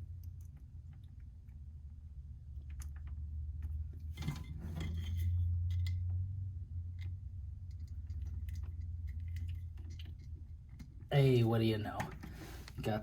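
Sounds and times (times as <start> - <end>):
steady low hum: 0.0 - 13.0
small metal clicks and scraping: 2.6 - 6.2.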